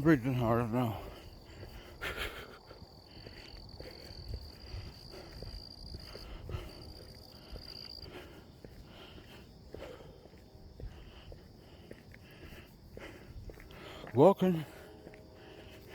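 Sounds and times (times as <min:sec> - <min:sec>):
man breathing hard: 0:00.8 - 0:15.9.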